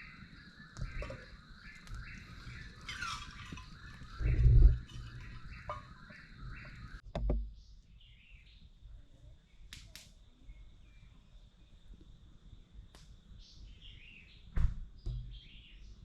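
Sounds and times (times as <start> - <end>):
bird chirping: 0.0 - 8.7, 13.4 - 16.0
low thumps on microphone: 6.7 - 7.6.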